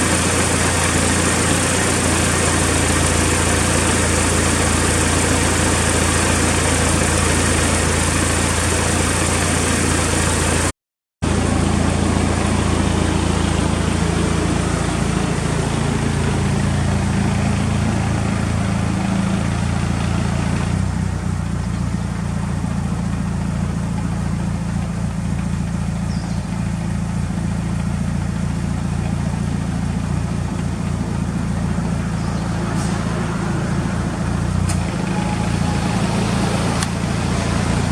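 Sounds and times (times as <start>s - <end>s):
car engine idling: 0.0s - 37.9s.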